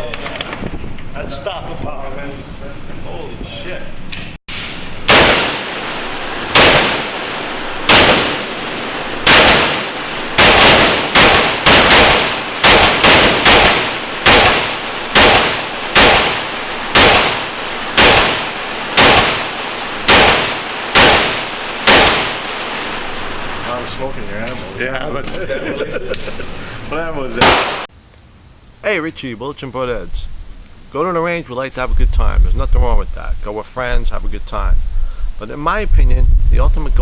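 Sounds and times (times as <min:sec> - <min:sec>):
gunshots with short echo: 0:04.5 - 0:23.0, 0:27.4 - 0:27.9.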